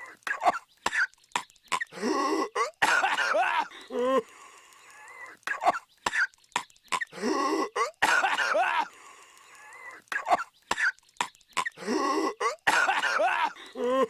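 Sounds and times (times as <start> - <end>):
cartoon character coughing: 1.7 - 3.7, 5.5 - 6.3, 6.9 - 8.9, 10.1 - 11.0, 11.6 - 14.0.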